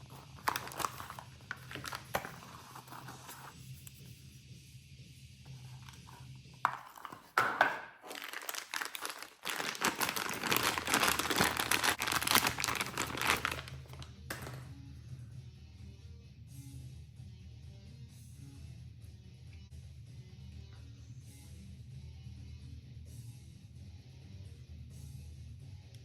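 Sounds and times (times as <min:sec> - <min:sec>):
packaging crinkling: 0:00.0 - 0:03.5, 0:06.7 - 0:14.6.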